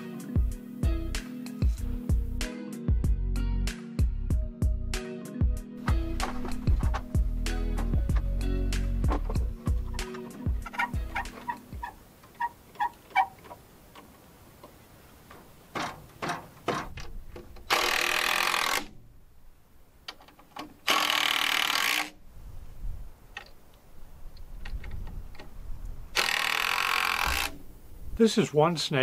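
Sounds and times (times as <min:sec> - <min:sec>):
clicks and knocks: 0:13.4 - 0:17.9
power drill driving screws into wood: 0:17.7 - 0:19.0, 0:20.8 - 0:22.2, 0:26.2 - 0:27.6.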